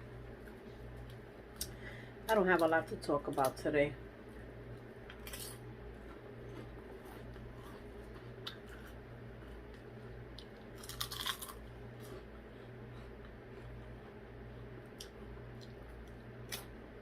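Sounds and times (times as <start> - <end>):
steady low hum: 0.0 - 17.0
person chewing sandwich: 4.7 - 16.8.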